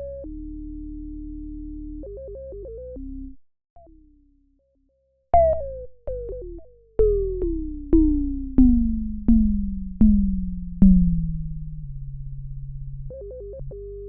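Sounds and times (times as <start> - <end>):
synthesizer notes sliding down: 5.4 - 13.3.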